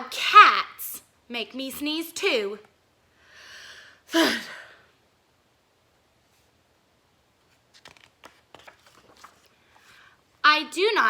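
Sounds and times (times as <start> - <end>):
paper clicks and rustles: 7.4 - 10.0
book pages turning: 7.4 - 10.1.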